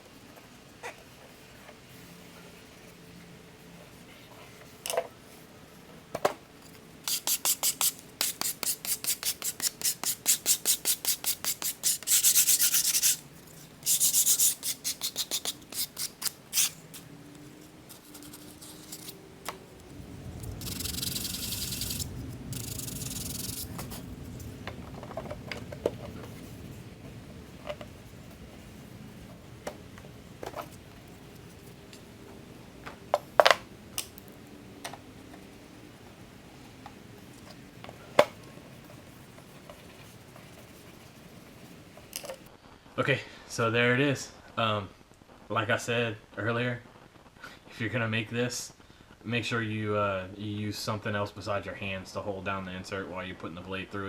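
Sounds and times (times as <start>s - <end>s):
sandpaper rubbing on wood: 7.1s - 13.2s, 13.8s - 17.1s, 17.9s - 19.2s, 20.5s - 24.6s, 36.7s - 42.5s.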